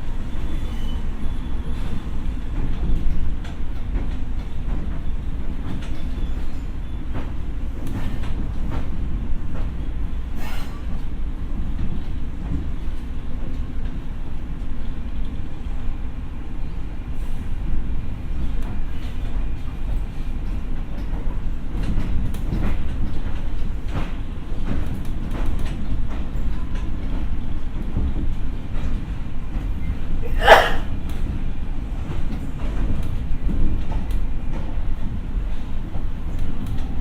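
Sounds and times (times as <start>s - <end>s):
train wheels rumbling on rail: 0.0s - 37.0s
wheels clicking over rail joints: 18.6s - 37.0s.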